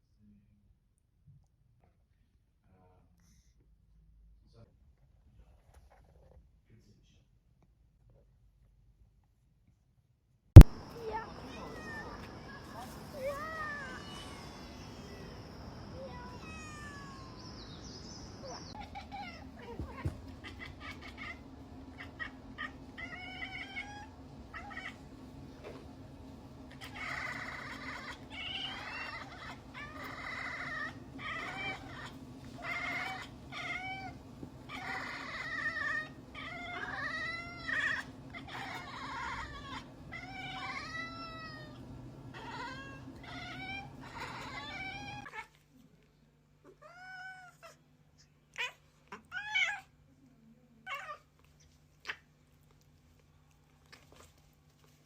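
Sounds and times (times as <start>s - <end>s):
cat meowing: 10.6s - 17.8s, 18.4s - 25.0s, 26.7s - 45.5s, 46.7s - 47.8s, 48.5s - 49.9s
steady low hum: 10.6s - 45.3s.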